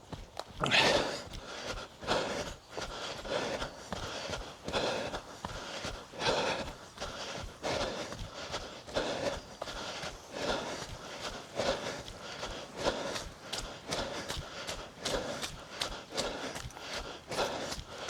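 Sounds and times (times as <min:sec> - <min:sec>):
heavy rhythmic breathing: 0:00.2 - 0:18.0.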